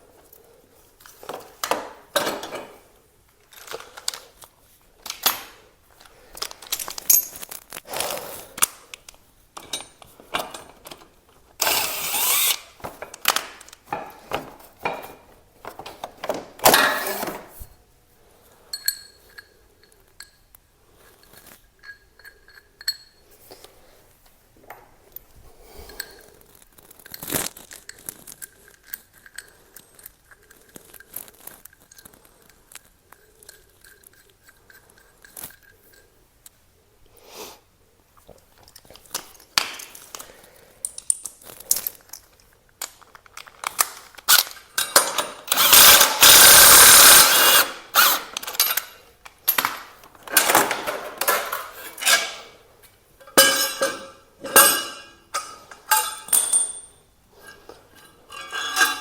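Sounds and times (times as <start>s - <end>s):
tools and fasteners clicking: 5.0s - 17.5s, 40.8s - 52.5s, 53.2s - 59.0s
power tool bursts: 11.6s - 12.8s, 45.1s - 48.6s.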